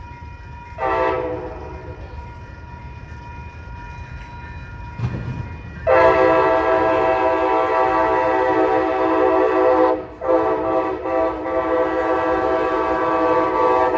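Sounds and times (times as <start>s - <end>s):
train rumble: 0.0s - 13.9s
locomotive air horn blasts: 0.8s - 1.6s, 5.9s - 13.9s.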